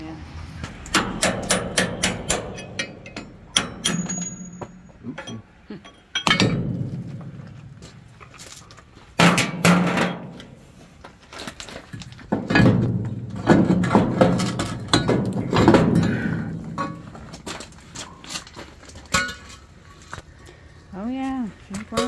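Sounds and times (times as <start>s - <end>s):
impact wrench hammering: 0.9s - 7.0s.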